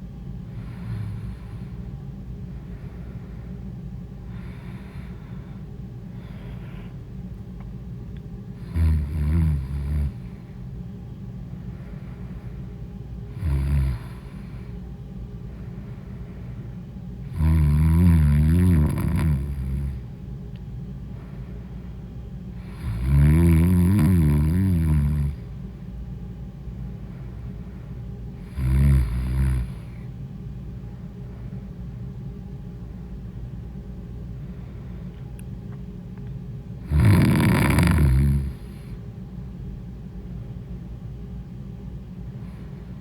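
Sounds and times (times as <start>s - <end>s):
steady low hum: 0.0s - 43.0s
woman snoring: 0.6s - 1.7s, 8.6s - 10.3s, 13.3s - 14.6s, 17.3s - 20.0s, 22.6s - 25.5s, 28.4s - 30.0s, 36.8s - 38.8s.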